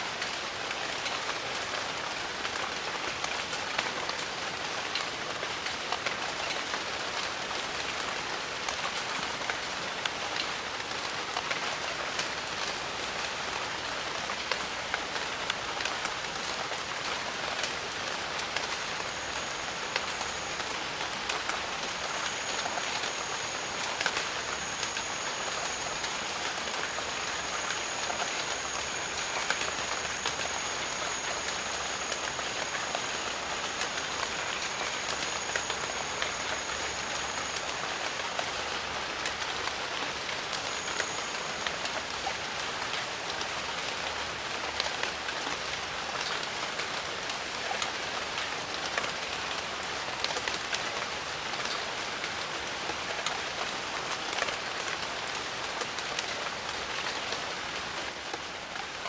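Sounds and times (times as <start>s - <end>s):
steady rain: 0.0s - 59.0s
thin high steady tone: 7.2s - 42.6s
raindrops ticking: 8.1s - 39.6s.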